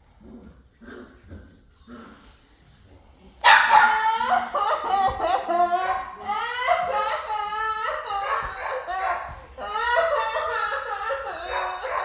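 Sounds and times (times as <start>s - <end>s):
puppy whining and yipping: 0.0s - 4.7s.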